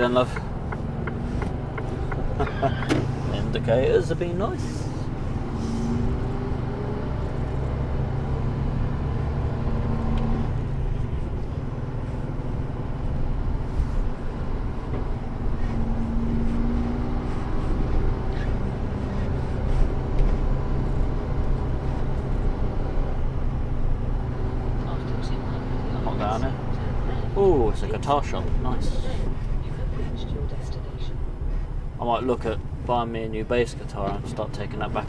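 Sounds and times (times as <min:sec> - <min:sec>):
lorry diesel engine rumble: 0:00.0 - 0:35.0
road noise: 0:00.0 - 0:35.0
short knocks: 0:00.3 - 0:03.1.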